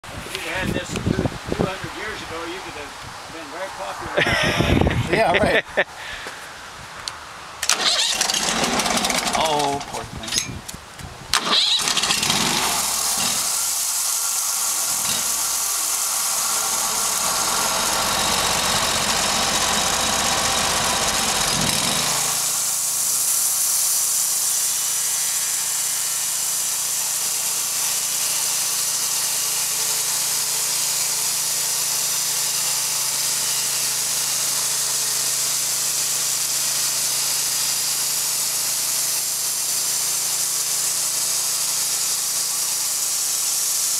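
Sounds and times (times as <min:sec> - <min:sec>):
sawmill sawing log: 0:07.6 - 0:10.1, 0:11.4 - 0:43.9.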